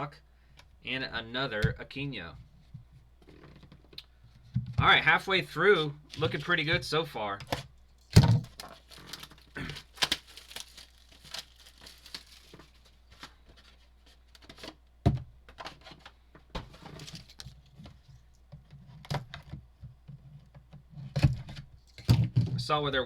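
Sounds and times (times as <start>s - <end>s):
cards being handled: 6.1s - 6.7s, 8.4s - 14.8s
foil wrappers tearing and crinkling: 6.1s - 6.7s, 8.0s - 14.8s, 16.9s - 17.6s.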